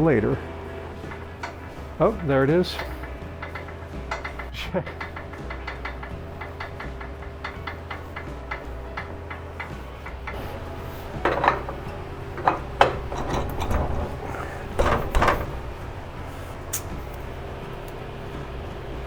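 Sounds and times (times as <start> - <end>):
parts knocking and clunking: 0.0 - 19.0
elliptical machine ticking: 0.1 - 11.0.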